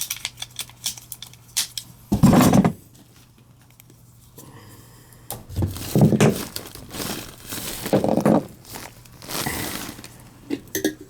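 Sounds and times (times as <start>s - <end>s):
rustling and crinkling parts: 0.0s - 2.0s, 5.4s - 10.9s.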